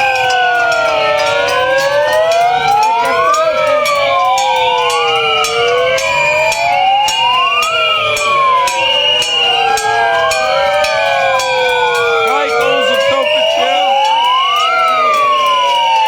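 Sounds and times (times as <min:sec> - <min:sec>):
sirens wailing: 0:00.0 - 0:16.0
steady high tones: 0:09.2 - 0:15.7.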